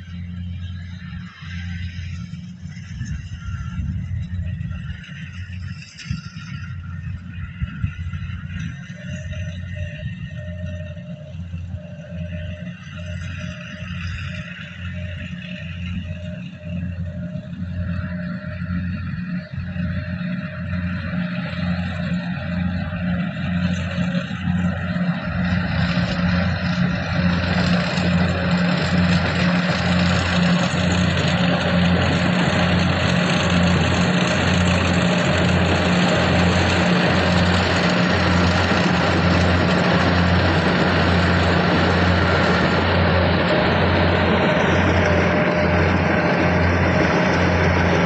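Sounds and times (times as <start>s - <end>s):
diesel engine hum: 0.0s - 48.0s.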